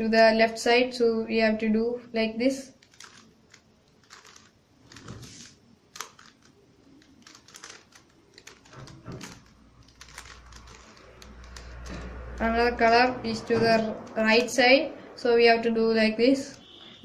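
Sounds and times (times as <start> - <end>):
puzzle cube plastic clicks: 2.7 - 12.5.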